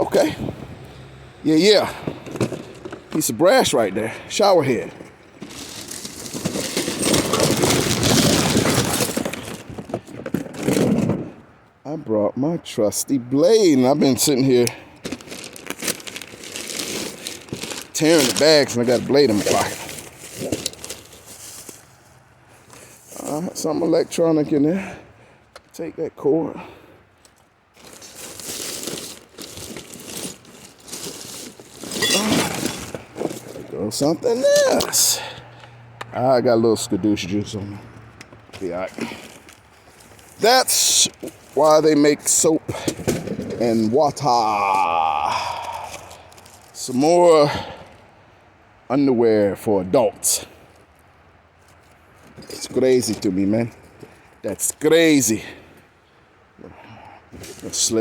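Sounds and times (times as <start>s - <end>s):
trash bags rustling: 1.5s - 11.4s, 13.9s - 23.7s, 27.7s - 35.4s, 38.4s - 44.8s
hard items clinking: 4.4s - 11.3s, 14.5s - 21.9s, 27.8s - 35.3s.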